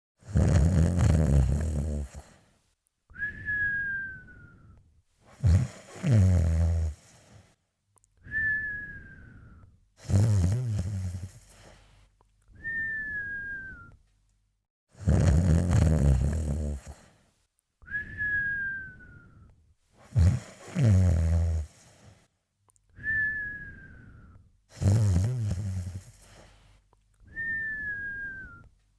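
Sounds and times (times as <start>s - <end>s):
person snoring with whistle: 0.2s - 2.4s, 3.2s - 7.4s, 8.2s - 11.8s, 12.6s - 14.0s, 15.0s - 17.2s, 17.9s - 22.1s, 23.0s - 26.5s, 27.2s - 28.7s.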